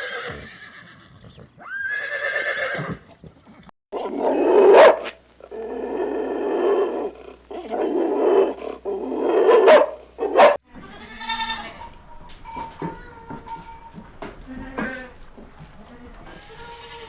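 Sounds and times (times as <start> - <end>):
dog growling and snarling: 4.0 - 10.6.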